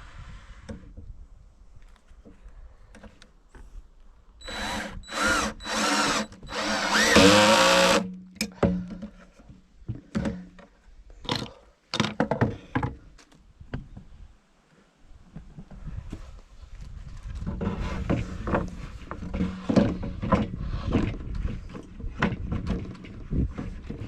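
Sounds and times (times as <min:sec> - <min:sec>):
power drill running: 0:04.4 - 0:08.0.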